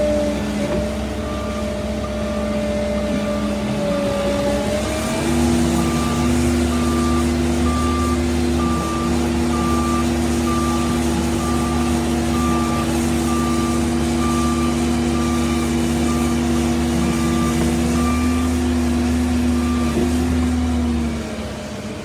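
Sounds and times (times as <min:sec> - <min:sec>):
excavator engine running: 0:00.0 - 0:22.0
travel alarm beeping: 0:05.8 - 0:16.3.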